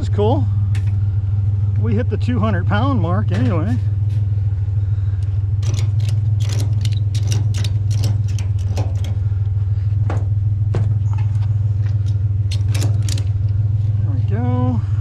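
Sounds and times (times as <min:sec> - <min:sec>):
vehicle engine idling: 0:00.0 - 0:15.0
scrap metal clicks and clanks: 0:05.2 - 0:14.0.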